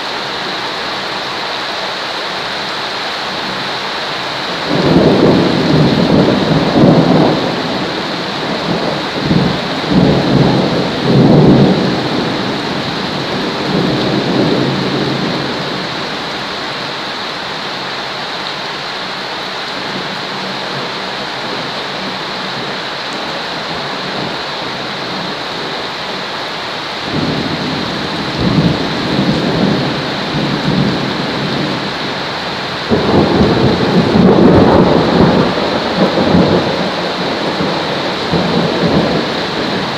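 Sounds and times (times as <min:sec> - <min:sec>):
steady rain hiss: 0:00.0 - 0:39.9
thunder rolling: 0:04.5 - 0:16.5, 0:27.0 - 0:39.9.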